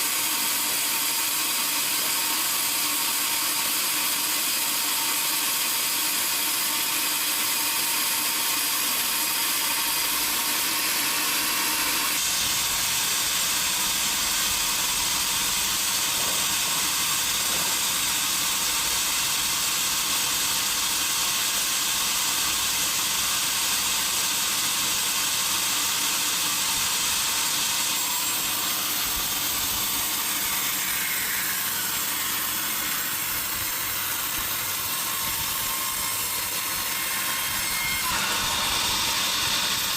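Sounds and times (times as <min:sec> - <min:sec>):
saw cutting through log: 0:00.0 - 0:39.9.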